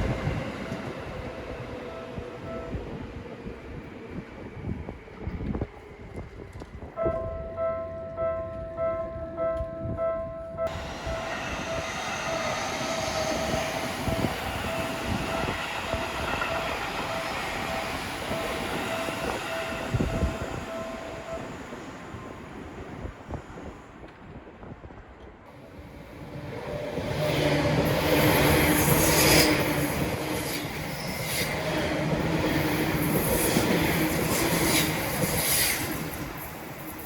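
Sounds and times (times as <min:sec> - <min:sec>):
train approaching: 0:00.0 - 0:24.7, 0:25.4 - 0:37.0
train wheels rumbling on rail: 0:00.0 - 0:37.0.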